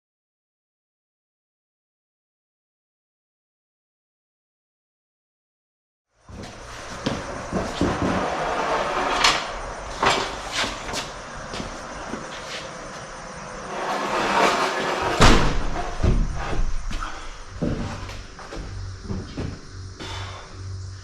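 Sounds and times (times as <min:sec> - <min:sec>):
scraping and shuffling: 0:06.3 - 0:20.2.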